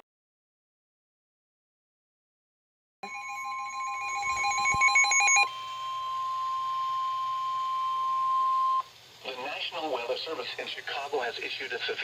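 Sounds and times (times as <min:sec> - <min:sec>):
steady high alert tone: 0:03.0 - 0:08.9
warbling data-burst tones: 0:03.0 - 0:08.9.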